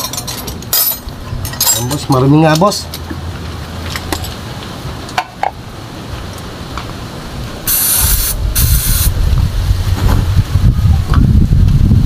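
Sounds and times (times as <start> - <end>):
aerosol spray hissing: 7.7 - 9.1.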